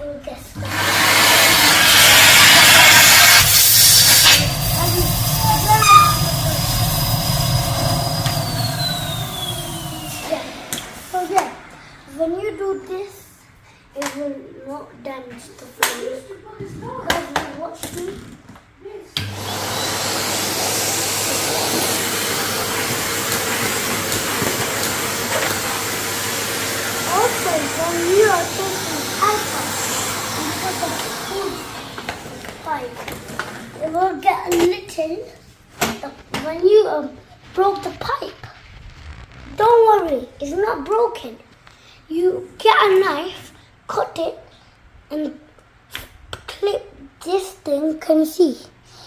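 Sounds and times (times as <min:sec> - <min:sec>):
high motor whine: 0:00.6 - 0:11.7
vacuum cleaner air rush: 0:00.6 - 0:12.1, 0:19.2 - 0:33.8.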